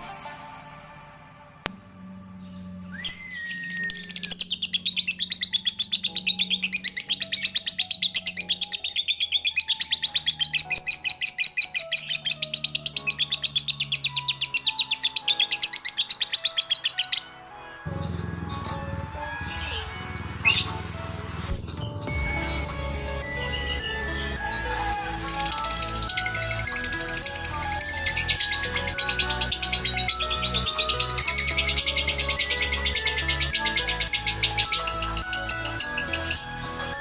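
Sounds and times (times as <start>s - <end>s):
whistled bird note: 2.6s - 13.5s
lovebird chattering: 3.5s - 17.3s, 21.8s - 36.6s.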